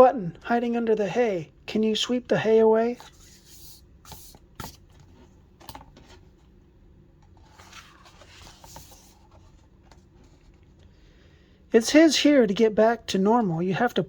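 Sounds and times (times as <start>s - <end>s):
book pages rustling: 2.9s - 6.6s, 7.2s - 10.9s.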